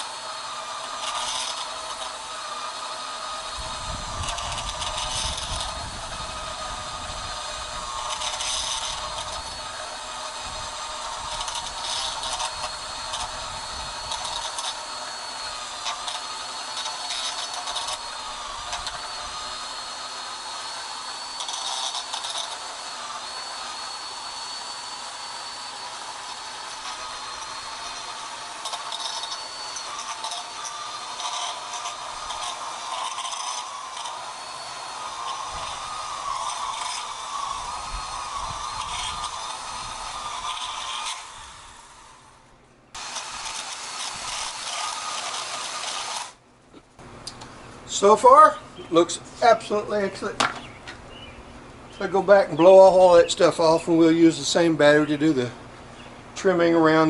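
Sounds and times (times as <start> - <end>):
blade scraping concrete: 0.0 - 42.1, 43.0 - 46.4
power cutter whining: 0.0 - 57.0.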